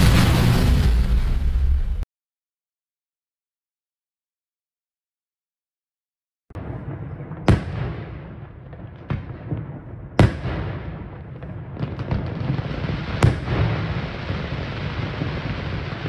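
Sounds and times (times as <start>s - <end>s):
rumble of explosions: 0.0s - 2.0s, 6.5s - 16.0s
small firework bangs: 6.5s - 16.0s.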